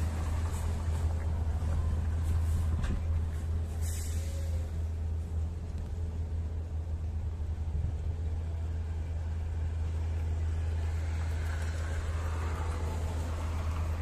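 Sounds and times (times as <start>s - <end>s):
car engine idling: 0.0s - 14.0s
hiss: 3.7s - 4.8s.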